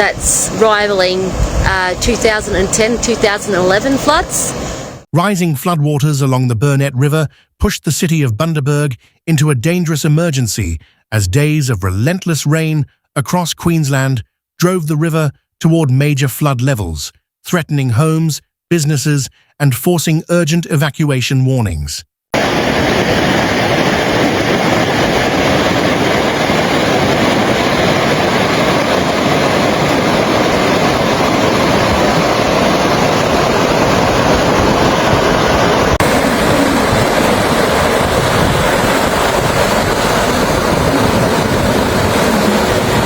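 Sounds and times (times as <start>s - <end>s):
floodwater roaring: 0.0s - 5.0s, 22.4s - 43.0s.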